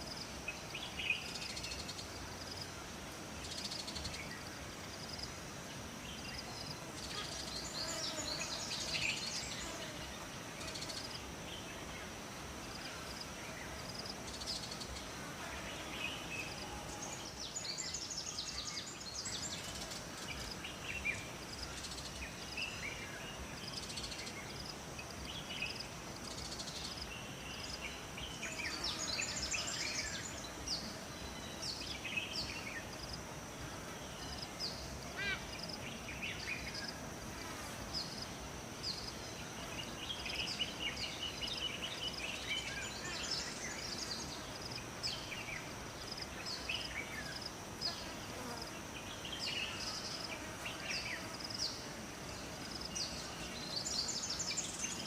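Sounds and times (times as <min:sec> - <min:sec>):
soft background hiss: 0:00.0 - 0:55.0
songbirds chirping and trilling: 0:00.0 - 0:55.0.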